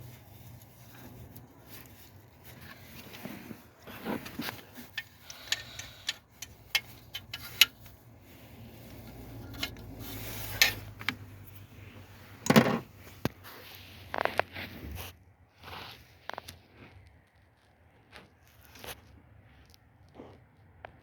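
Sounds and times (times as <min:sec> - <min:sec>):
metal tools clinking: 0:03.8 - 0:08.1, 0:08.8 - 0:11.2.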